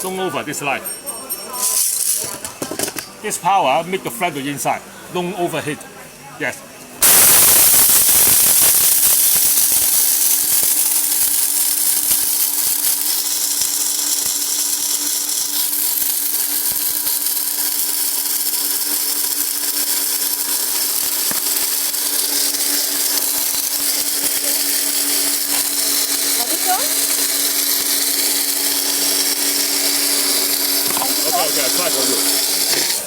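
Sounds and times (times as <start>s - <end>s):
food processor motor whirring: 7.0s - 33.0s.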